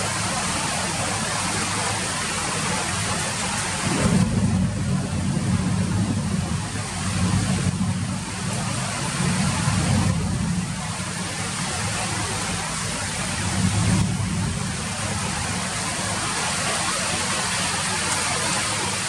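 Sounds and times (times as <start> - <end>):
steady rain falling: 0.0 - 19.0
low rumble: 3.7 - 16.0.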